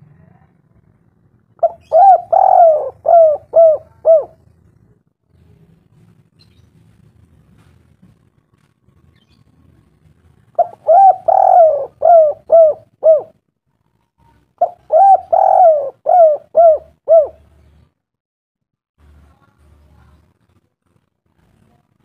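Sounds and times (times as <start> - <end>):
bird cooing: 1.6 - 4.5, 10.6 - 13.3, 14.6 - 17.5.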